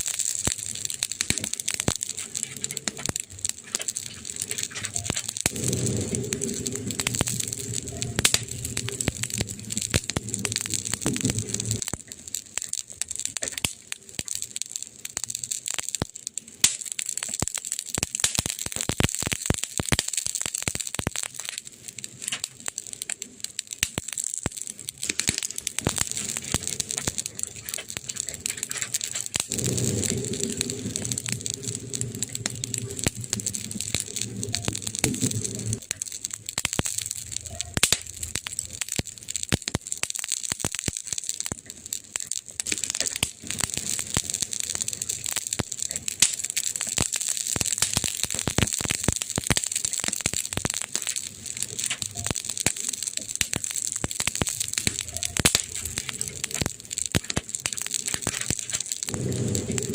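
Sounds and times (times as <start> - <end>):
wood fire crackling: 0.0 - 59.9
low hum: 5.0 - 11.8, 29.2 - 35.9, 59.1 - 59.9.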